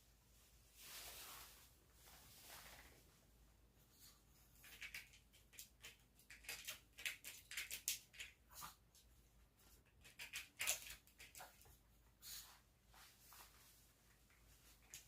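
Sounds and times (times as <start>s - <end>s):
dog claws scratching and pattering: 4.4s - 11.9s, 14.3s - 15.0s.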